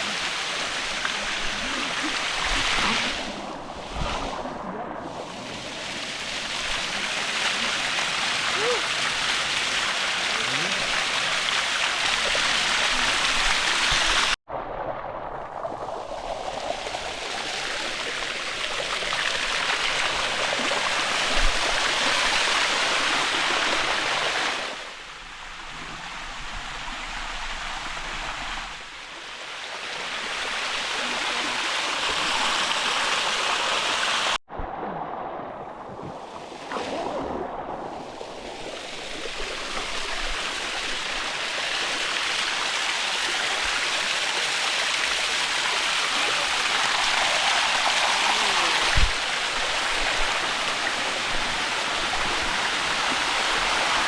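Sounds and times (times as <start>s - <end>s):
waterfall rushing over rocks: 0.0s - 3.2s, 5.4s - 14.4s, 27.0s - 34.4s, 38.8s - 54.0s.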